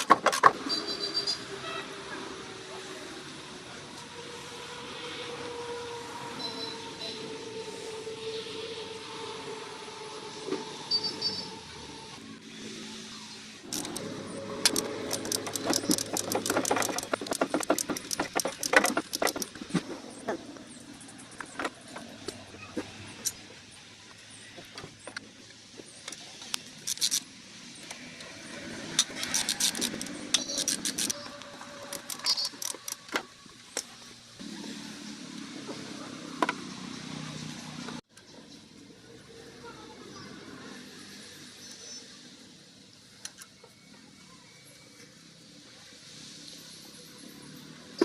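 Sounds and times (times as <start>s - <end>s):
rapid metallic clicks and clinks: 13.7s - 19.9s, 26.0s - 28.0s, 28.9s - 33.9s.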